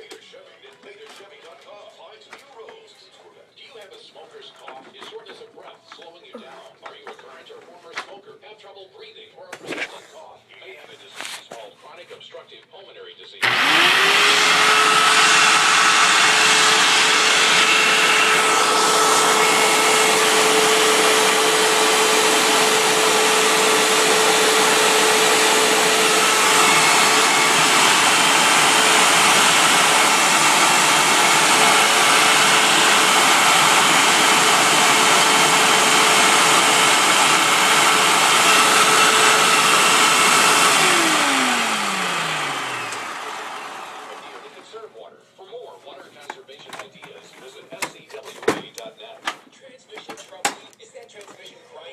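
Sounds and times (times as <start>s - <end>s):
vacuum cleaner running: 13.4s - 44.9s.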